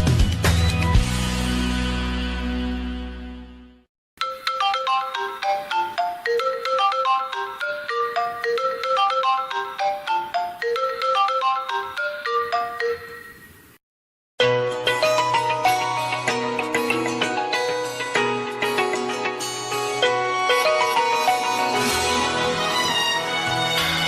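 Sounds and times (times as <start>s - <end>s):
smartphone ringtone melody: 4.2s - 13.6s, 14.5s - 23.1s.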